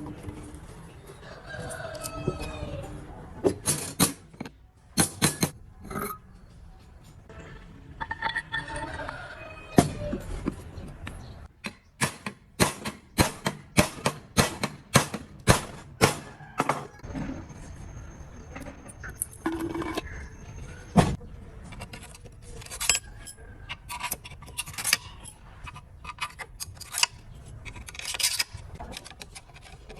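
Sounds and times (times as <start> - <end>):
metal tools clinking: 17.8 - 20.9, 21.7 - 29.9.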